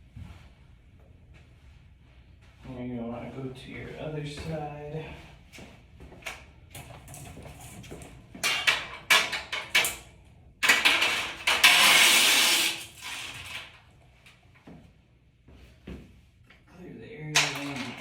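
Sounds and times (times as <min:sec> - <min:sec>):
hard parts clattering: 0:07.0 - 0:13.8, 0:17.3 - 0:18.0
loud scraping and rustling: 0:10.8 - 0:13.8.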